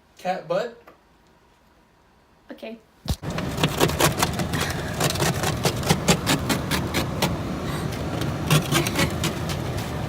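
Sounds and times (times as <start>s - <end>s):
ice scraper rasping on glass: 3.6s - 7.4s, 8.3s - 9.8s.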